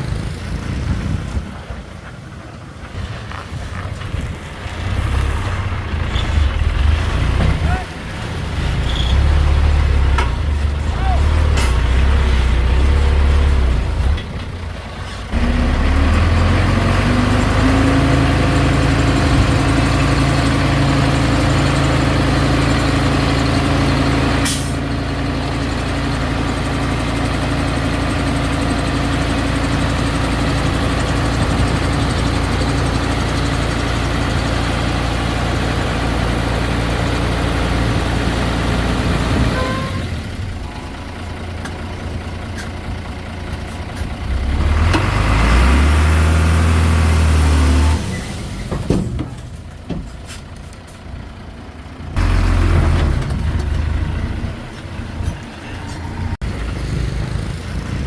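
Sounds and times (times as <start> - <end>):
diesel engine of earthmoving machine: 0.0 - 58.0.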